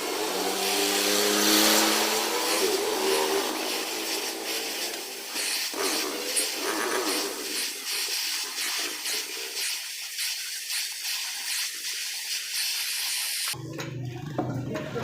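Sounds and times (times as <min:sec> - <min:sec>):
arc welding hiss and crackle: 0:00.0 - 0:13.6.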